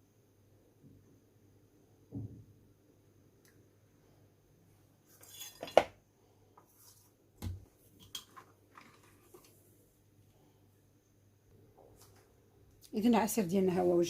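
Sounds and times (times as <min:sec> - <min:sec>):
kitchenware clinking: 0:05.1 - 0:06.0.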